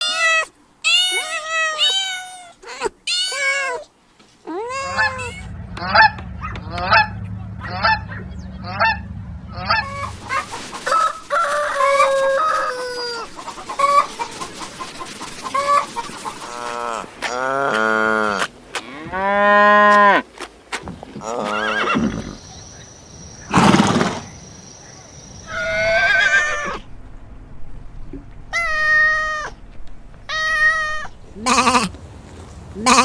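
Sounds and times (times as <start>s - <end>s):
fowl honking calls: 4.8s - 17.1s.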